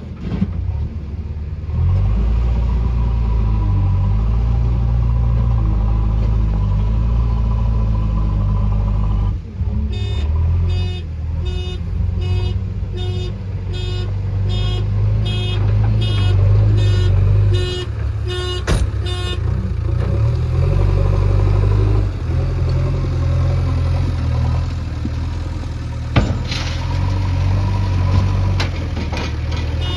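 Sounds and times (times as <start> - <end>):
heavy diesel engine running: 0.0 - 29.9
sharp metallic knocks: 26.1 - 27.1.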